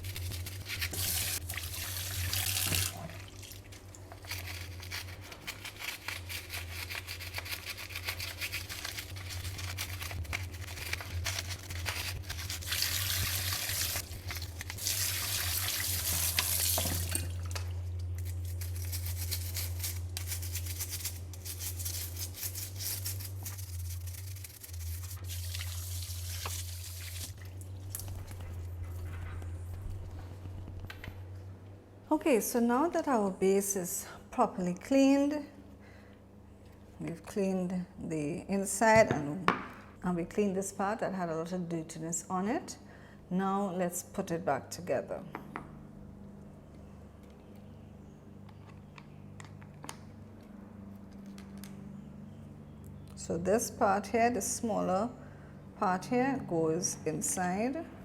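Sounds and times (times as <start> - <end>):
tap water running into a sink: 1.0 - 3.6, 14.8 - 17.7, 25.2 - 27.4
steady low hum: 17.0 - 58.0.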